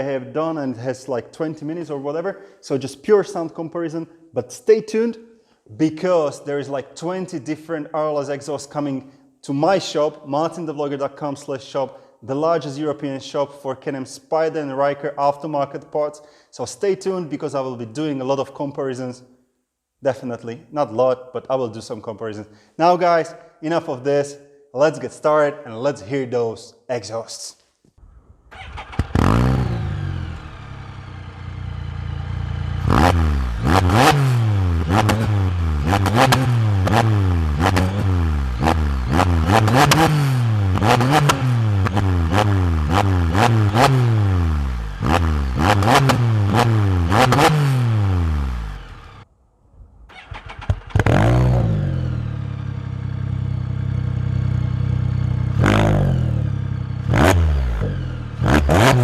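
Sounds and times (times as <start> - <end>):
motorcycle engine revving: 28.0 - 49.2, 50.1 - 59.0
motorcycle engine idling: 28.5 - 33.7, 50.1 - 58.5.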